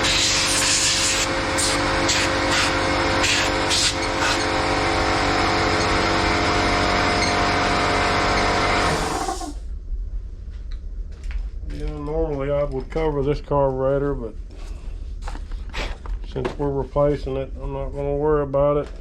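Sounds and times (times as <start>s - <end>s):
air blower rushing: 0.0s - 9.7s
motor hum: 0.0s - 9.8s.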